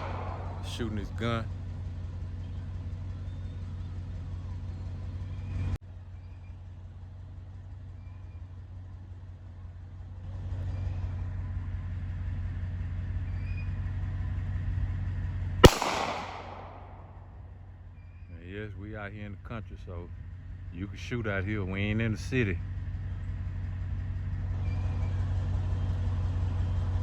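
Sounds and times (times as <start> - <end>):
loud gunshot with echo: 0.0 - 1.2, 15.6 - 17.3
engine humming: 0.0 - 27.0.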